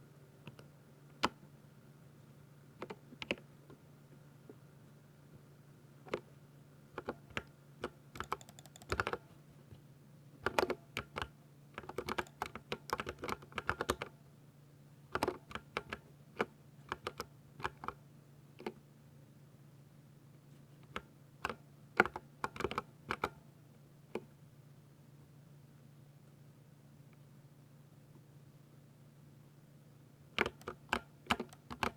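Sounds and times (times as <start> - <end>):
faint low hum: 0.0 - 31.9
mechanical keyboard typing: 7.0 - 9.2, 10.4 - 14.1, 15.2 - 18.0, 21.0 - 23.4, 30.4 - 31.9.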